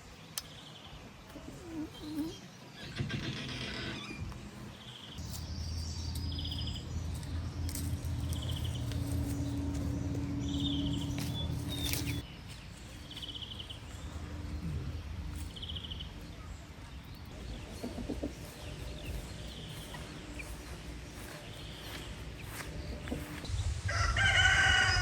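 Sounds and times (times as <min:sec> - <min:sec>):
low steady hum: 0:04.4 - 0:12.3.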